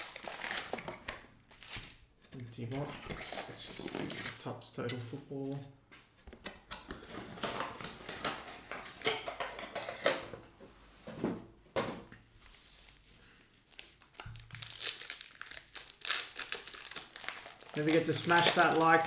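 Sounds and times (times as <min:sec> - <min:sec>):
wrapper crinkling and tearing: 0:00.0 - 0:02.0, 0:12.7 - 0:19.0.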